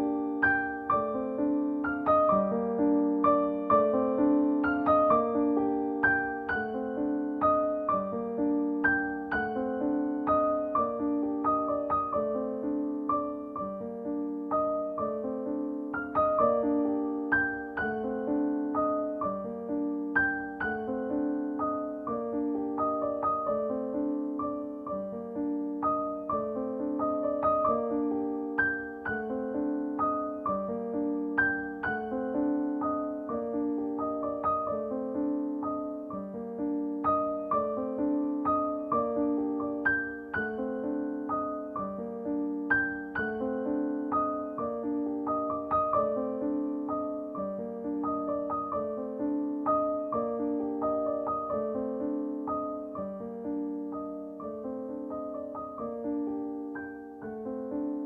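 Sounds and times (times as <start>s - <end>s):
gentle piano melody: 0.0s - 58.0s.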